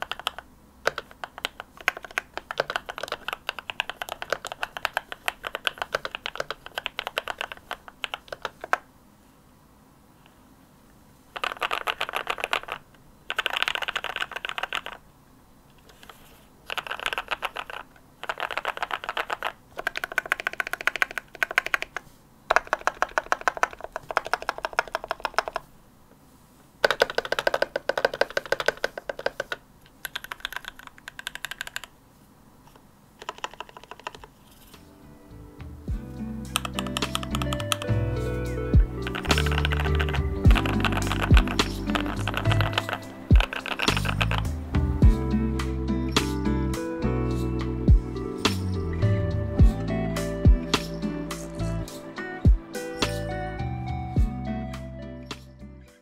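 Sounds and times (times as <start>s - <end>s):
mechanical keyboard typing: 0.0s - 8.9s, 11.4s - 15.0s, 15.8s - 25.7s, 26.8s - 31.9s, 33.2s - 34.4s, 36.5s - 38.0s, 38.9s - 44.6s
lofi music with a beat: 35.6s - 56.0s.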